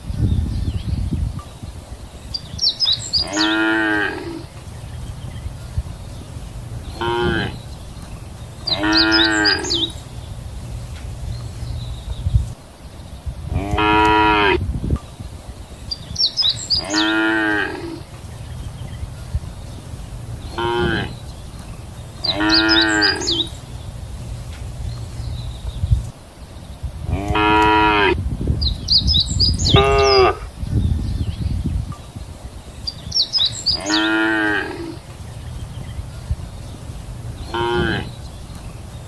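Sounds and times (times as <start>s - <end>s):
cattle mooing: 3.2s - 4.5s, 7.0s - 7.6s, 8.7s - 10.0s, 13.5s - 14.6s, 16.8s - 18.0s, 20.5s - 21.2s, 22.3s - 23.5s, 27.1s - 28.2s, 33.8s - 35.0s, 37.5s - 38.1s.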